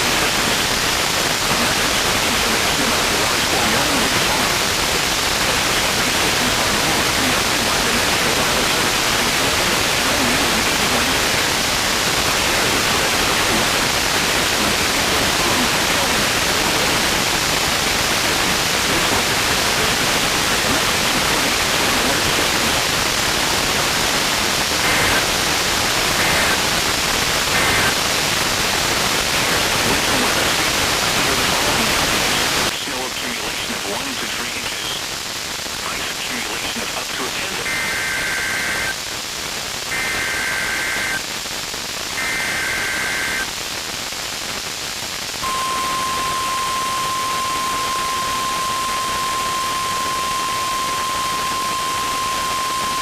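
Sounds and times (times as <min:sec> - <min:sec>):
radio static hiss: 0:00.0 - 0:53.0
faint data bursts: 0:29.3 - 0:41.3, 0:42.0 - 0:43.7, 0:45.3 - 0:53.0.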